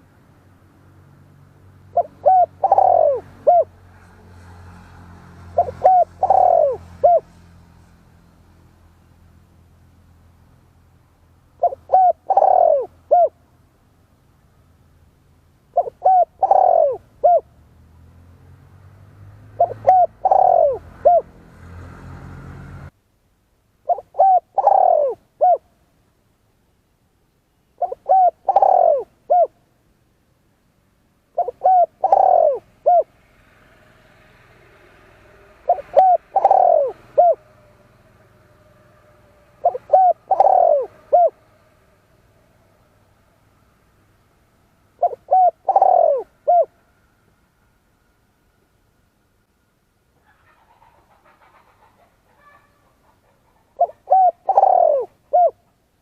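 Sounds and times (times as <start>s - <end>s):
dove cooing: 1.9s - 4.8s, 5.4s - 7.5s, 11.6s - 13.4s, 15.7s - 17.6s, 19.5s - 21.7s, 23.9s - 25.7s, 27.8s - 29.6s, 31.4s - 33.2s, 34.9s - 41.8s, 44.9s - 46.8s, 50.2s - 55.8s.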